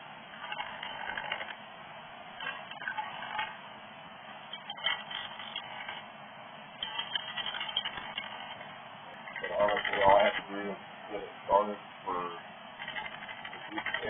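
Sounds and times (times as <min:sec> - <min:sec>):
chisel scraping spinning wood: 0:00.3 - 0:01.6, 0:02.4 - 0:03.6, 0:04.5 - 0:06.1, 0:06.8 - 0:10.4, 0:12.8 - 0:14.0
wood lathe running: 0:00.3 - 0:01.6, 0:02.4 - 0:03.6, 0:04.6 - 0:06.0, 0:06.8 - 0:10.5, 0:12.8 - 0:14.0.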